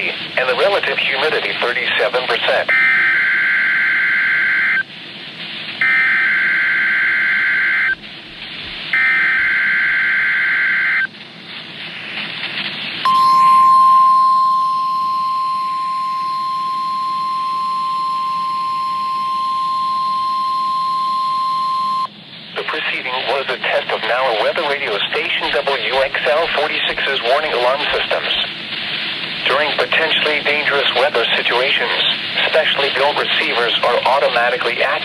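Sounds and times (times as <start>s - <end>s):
radio hiss: 0.0s - 3.1s, 4.2s - 13.5s, 14.3s - 35.0s
steady warning alarm tone: 2.7s - 4.9s, 5.8s - 8.0s, 8.9s - 11.1s, 13.0s - 22.1s.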